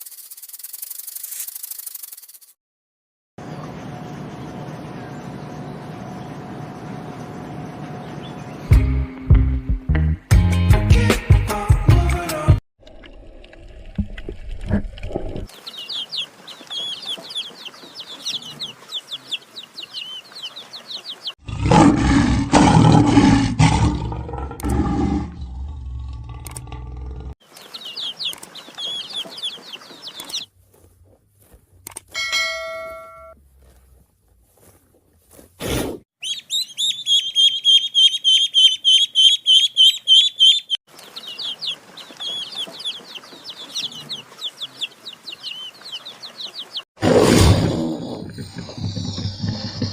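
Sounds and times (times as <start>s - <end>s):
high bird chirping: 15.5s - 21.4s, 27.4s - 30.5s, 36.2s - 46.9s.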